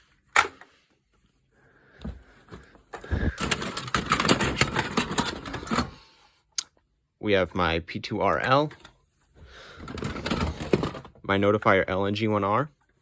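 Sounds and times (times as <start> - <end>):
rattling and clattering devices: 2.1 - 6.1, 8.4 - 9.0, 9.7 - 11.3.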